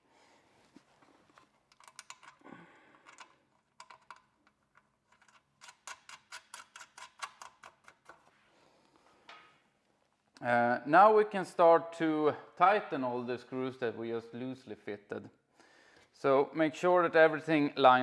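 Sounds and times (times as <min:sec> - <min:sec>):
hand tool clicks turning screw: 0:05.2 - 0:08.2.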